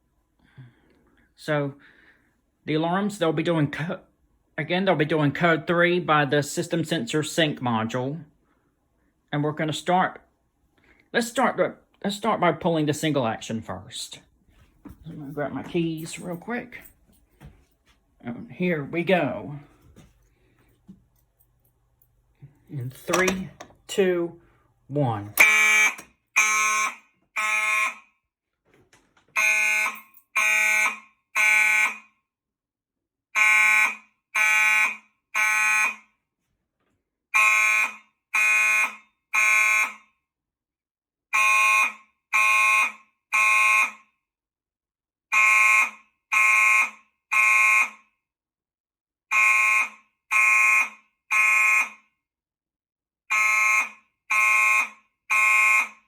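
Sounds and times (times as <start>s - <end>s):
fire alarm horn blasts: 25.1s - 28.2s, 29.3s - 32.2s, 33.3s - 36.2s, 37.3s - 40.2s, 41.3s - 44.2s, 45.3s - 48.2s, 49.3s - 52.1s, 53.3s - 56.0s.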